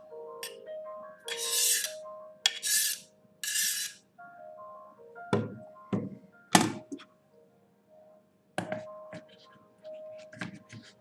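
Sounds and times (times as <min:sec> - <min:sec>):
background music melody: 0:00.0 - 0:11.0
rasping scrapes: 0:01.3 - 0:04.0
kitchenware knocks: 0:05.3 - 0:07.0.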